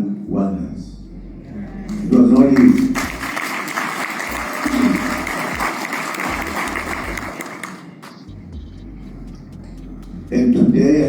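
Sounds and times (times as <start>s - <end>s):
crowd applauding: 1.8s - 9.3s.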